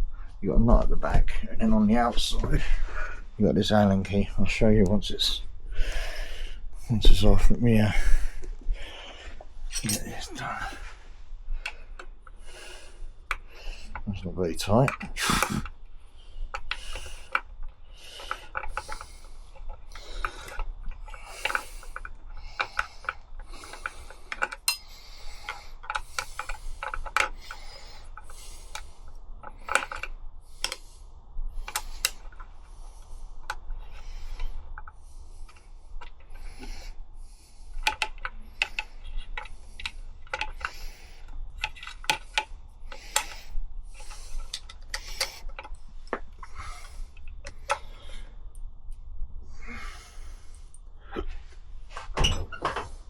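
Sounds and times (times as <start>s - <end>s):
spanner clicking and scraping on metal: 18.1s - 28.9s, 29.5s - 30.8s, 37.7s - 45.8s.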